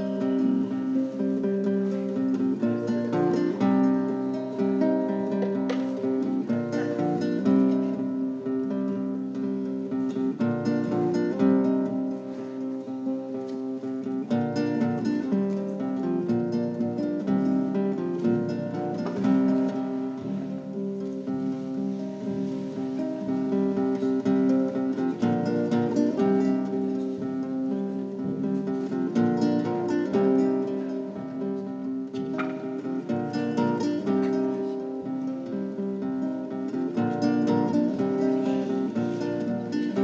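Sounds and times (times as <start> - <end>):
strummed string instruments: 0.0 - 40.0.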